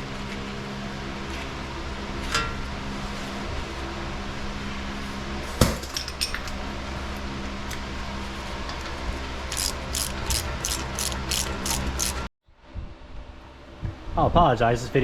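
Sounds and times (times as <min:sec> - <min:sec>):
steady shop hum: 0:00.7 - 0:12.3
quick metallic clicks: 0:09.5 - 0:12.3.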